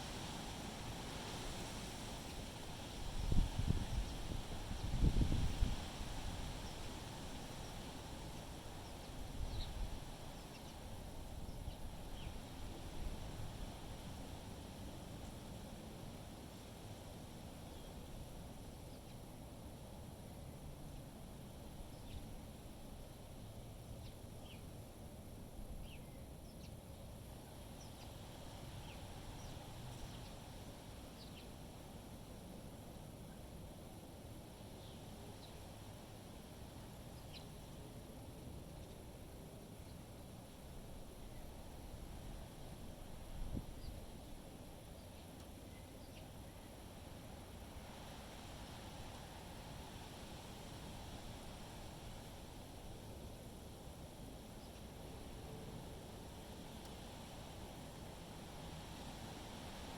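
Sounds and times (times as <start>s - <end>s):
wind rumble on microphone: 0.0s - 8.1s, 8.9s - 14.4s, 41.3s - 44.4s
wind buffeting microphone: 3.1s - 6.3s
small birds chirping: 8.4s - 10.8s, 37.1s - 37.7s, 44.9s - 46.7s.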